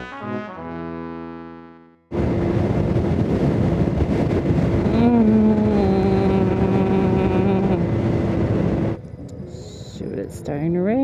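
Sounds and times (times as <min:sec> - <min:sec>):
brass music: 0:00.0 - 0:02.2
wind rush: 0:02.1 - 0:11.0.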